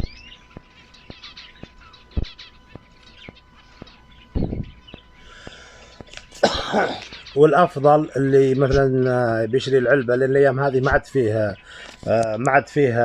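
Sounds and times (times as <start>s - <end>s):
cage birds chirping: 0.0s - 13.0s
faint regular ticks: 0.5s - 4.1s.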